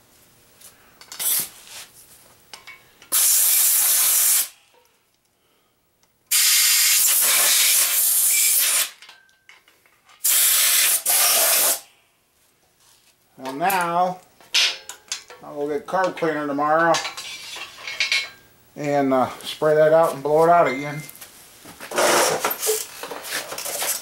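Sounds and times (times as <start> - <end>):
compressed air blow gun hissing: 3.1 - 4.6, 6.3 - 8.9, 10.2 - 11.8.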